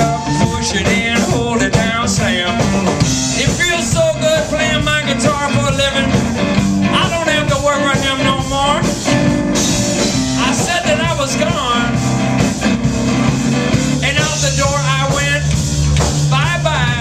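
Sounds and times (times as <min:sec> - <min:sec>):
lead vocal singing: 0:00.0 - 0:08.9, 0:10.3 - 0:11.9
bass guitar: 0:00.0 - 0:17.0
drums: 0:00.0 - 0:17.0.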